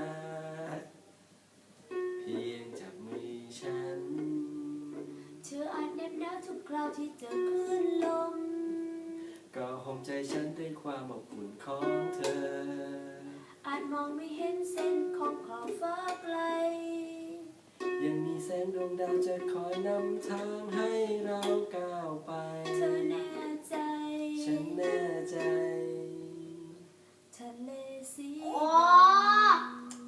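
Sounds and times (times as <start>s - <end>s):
person singing slow song: 0.0s - 1.1s, 1.9s - 30.0s
strummed string instrument: 1.9s - 16.8s, 17.7s - 26.8s.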